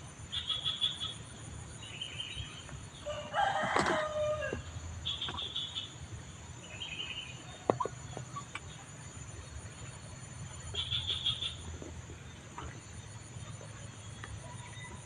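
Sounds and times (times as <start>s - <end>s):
rooster crowing: 3.0s - 4.7s.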